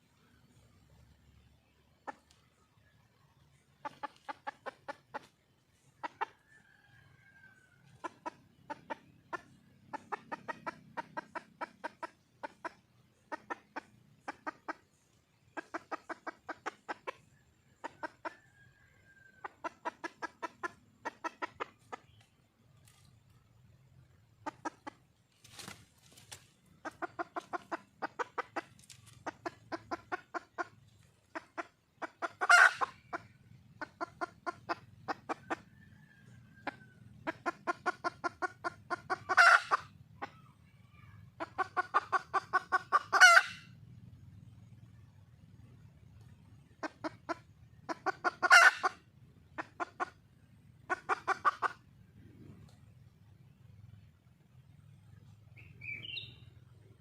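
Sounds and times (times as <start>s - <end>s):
hen clucking rapidly: 0.0s - 57.0s.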